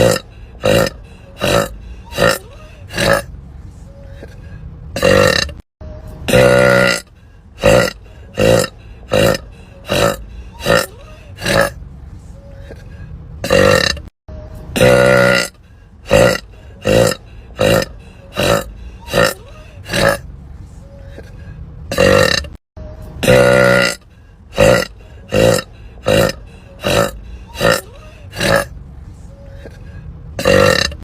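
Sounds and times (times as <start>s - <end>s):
woman burping: 0.0s - 3.3s, 5.0s - 5.6s, 6.3s - 7.0s, 7.6s - 11.8s, 13.4s - 14.1s, 14.8s - 15.5s, 16.1s - 20.2s, 21.9s - 22.6s, 23.2s - 24.0s, 24.6s - 28.7s, 30.4s - 31.0s.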